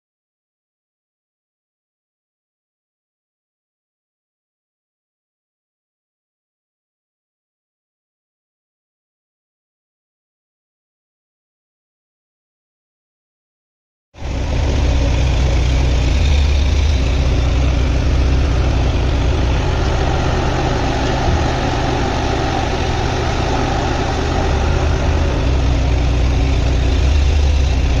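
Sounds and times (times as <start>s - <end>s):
excavator diesel engine droning: 14.2s - 28.0s.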